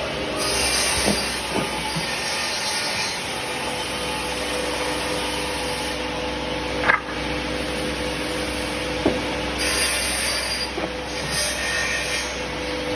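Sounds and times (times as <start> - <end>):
saw cutting wood: 8.6 - 12.8.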